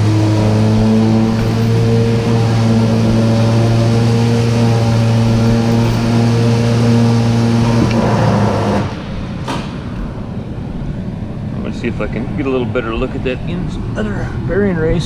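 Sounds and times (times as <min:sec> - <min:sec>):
motor running steadily: 0:00.0 - 0:09.3.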